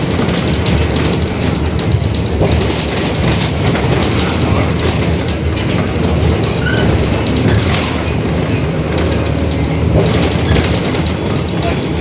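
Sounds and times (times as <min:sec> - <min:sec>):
bus body rattling: 0:00.0 - 0:12.0
bus diesel engine rumble: 0:00.0 - 0:12.0
brief squeak: 0:06.6 - 0:07.6.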